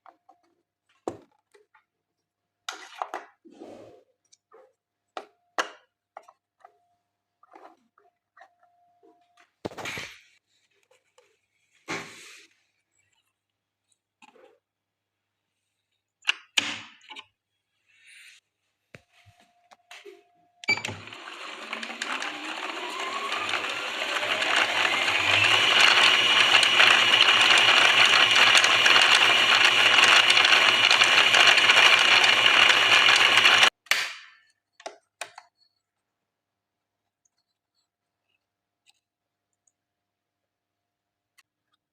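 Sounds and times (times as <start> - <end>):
embroidery machine stitching: 20.7 - 33.7.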